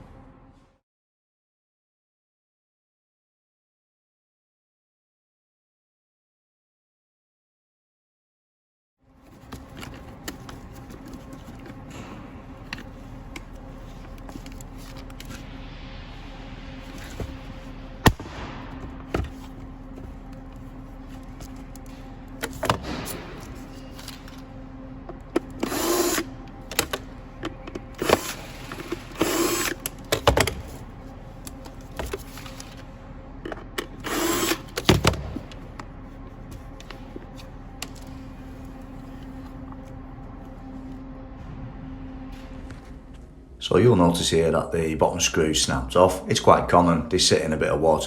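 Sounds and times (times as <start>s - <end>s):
power drill running: 25.3s - 30.7s, 33.8s - 35.5s.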